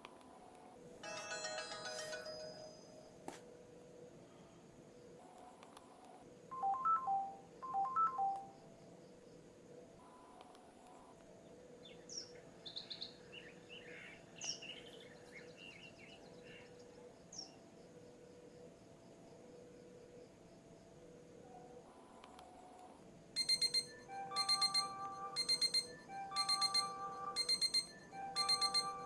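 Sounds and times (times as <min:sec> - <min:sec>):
bird-like chirping ringtone: 0:01.0 - 0:03.2, 0:06.5 - 0:08.6, 0:23.4 - 0:29.0
phone ringtone beeping notes: 0:01.0 - 0:03.2, 0:06.5 - 0:08.6, 0:23.4 - 0:29.0.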